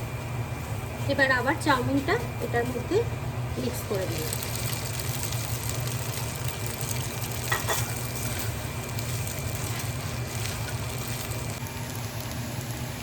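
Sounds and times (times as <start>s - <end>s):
noodles sizzling in a pan: 3.7s - 13.0s.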